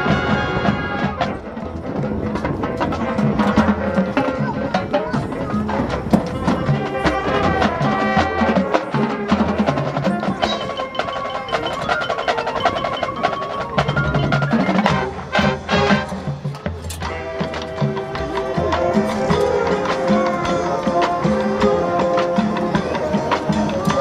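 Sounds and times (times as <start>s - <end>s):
marching band playing: 0.0s - 24.0s
mallet percussion ringing notes: 9.3s - 15.2s.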